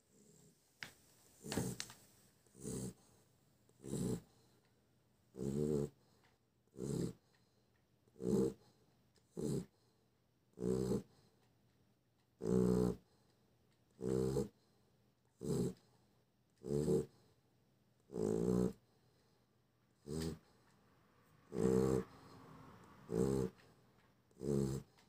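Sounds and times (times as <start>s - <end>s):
quiet breaths: 0.0s - 11.8s, 12.6s - 17.6s, 18.2s - 25.0s
dog snoring: 0.1s - 0.6s, 1.4s - 3.2s, 3.8s - 4.6s, 5.3s - 7.6s, 8.2s - 9.9s, 10.5s - 11.4s, 12.4s - 13.2s, 14.0s - 14.8s, 15.4s - 17.3s, 18.0s - 19.4s, 20.0s - 20.7s, 21.3s - 25.0s.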